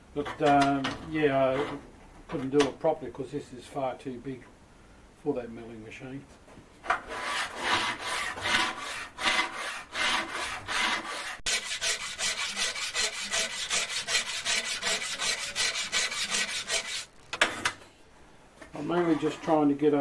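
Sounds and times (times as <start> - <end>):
file scraping on metal: 6.8 - 17.6.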